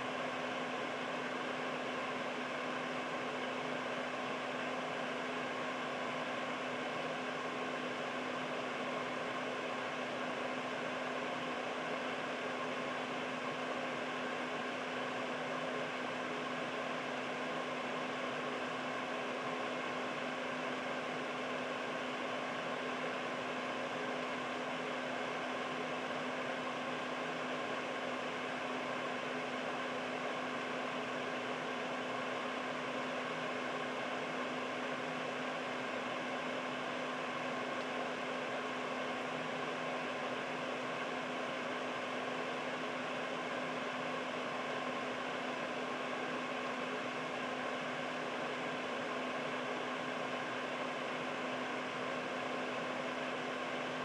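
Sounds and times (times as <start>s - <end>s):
air purifier fan rushing: 0.0s - 54.0s.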